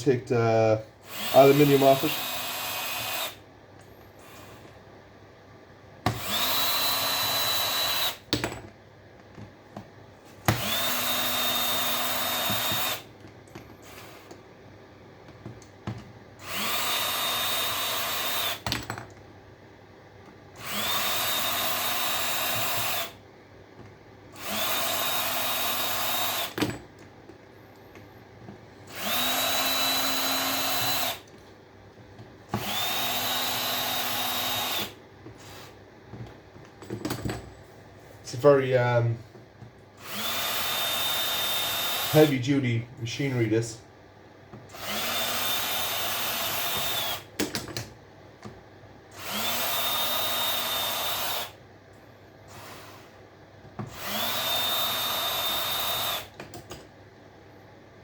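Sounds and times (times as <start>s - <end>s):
power drill motor whine: 1.0s - 3.4s, 4.2s - 4.7s, 6.1s - 8.3s, 10.5s - 13.1s, 16.4s - 18.6s, 20.6s - 23.2s, 24.4s - 26.8s, 28.9s - 31.2s, 32.5s - 35.8s, 40.0s - 42.4s, 44.7s - 47.3s, 49.1s - 51.6s, 52.5s - 53.1s, 53.9s - 56.3s.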